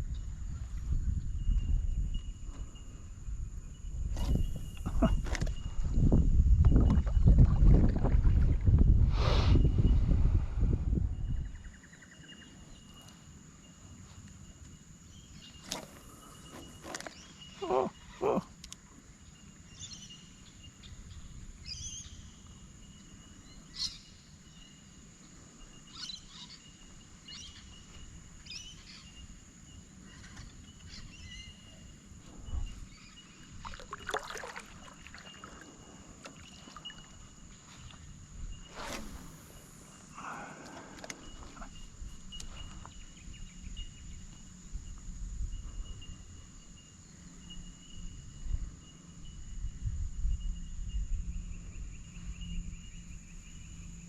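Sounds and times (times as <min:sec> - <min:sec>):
high-pitched insect drone: 0:34.8 - 0:54.0.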